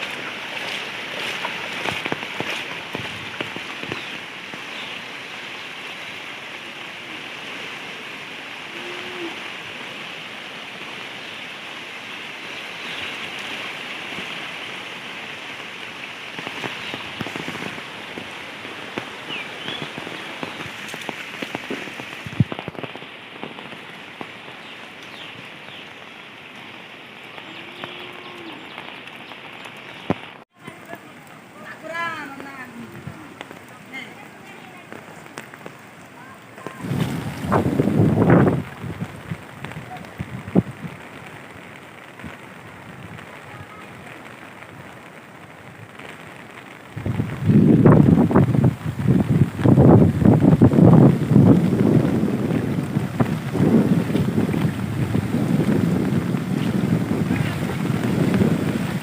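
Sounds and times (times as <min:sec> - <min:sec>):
raindrops ticking close by: 0:00.0 - 0:59.0
steady rain falling: 0:00.0 - 0:59.0.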